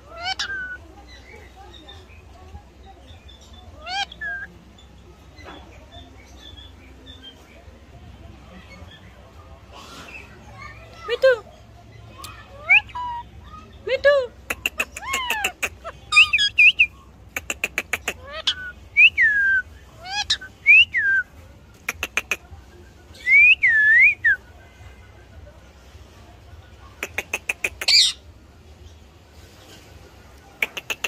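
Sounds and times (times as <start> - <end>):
parakeet whistled squawks: 0.1 - 0.8, 16.1 - 16.9, 18.2 - 21.2.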